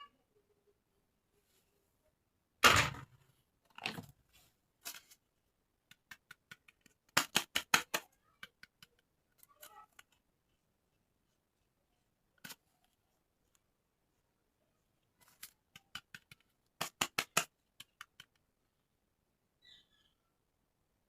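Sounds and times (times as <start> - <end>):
toy clicking and snapping: 15.2 - 18.4.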